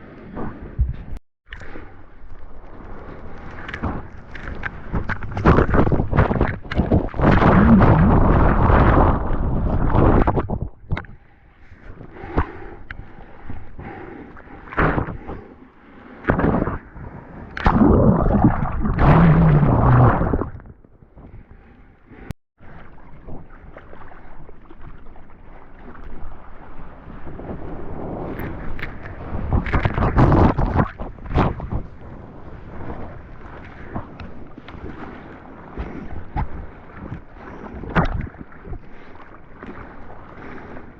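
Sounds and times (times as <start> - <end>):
water splashing over microphone: 1.5 - 11.2, 16.2 - 20.9, 22.7 - 40.9
water gurgling: 4.9 - 11.1, 17.5 - 20.8.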